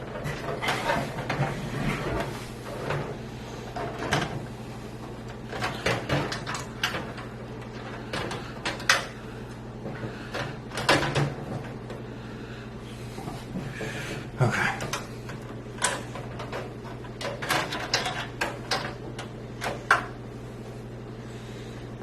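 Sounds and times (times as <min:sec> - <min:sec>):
steady low hum: 0:00.0 - 0:22.0
clicks and scrapes of handling parts: 0:14.8 - 0:20.2.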